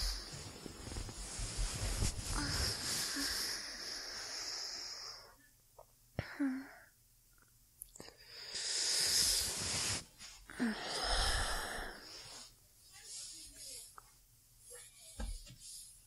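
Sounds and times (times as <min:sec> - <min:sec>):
slow human breathing: 0:00.0 - 0:05.5, 0:08.0 - 0:12.6.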